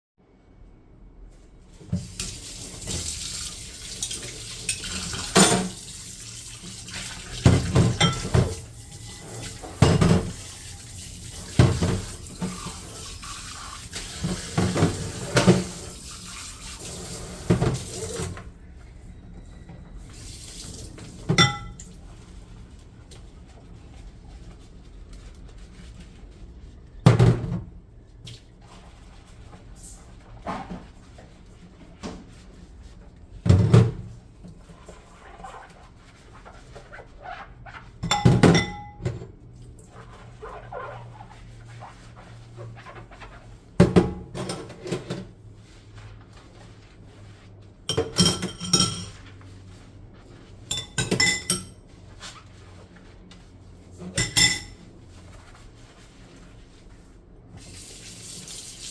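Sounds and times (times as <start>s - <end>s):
dishes clattering: 7.5s - 8.6s, 21.3s - 21.8s, 38.0s - 39.2s, 47.9s - 49.2s, 50.7s - 51.8s, 54.1s - 54.8s.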